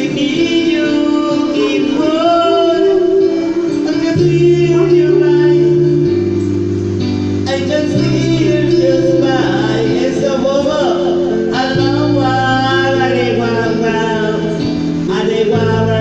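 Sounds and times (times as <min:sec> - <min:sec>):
person singing: 0:00.0 - 0:06.4, 0:07.5 - 0:16.0
guitar: 0:00.0 - 0:16.0.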